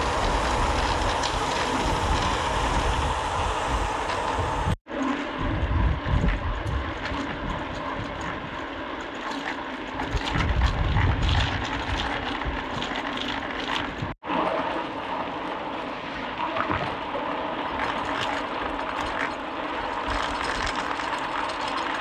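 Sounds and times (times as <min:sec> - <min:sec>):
bike tyre and drivetrain rattle: 0:00.0 - 0:04.8, 0:05.4 - 0:14.2, 0:17.7 - 0:22.0
wind on microphone: 0:00.0 - 0:08.7, 0:10.0 - 0:13.0.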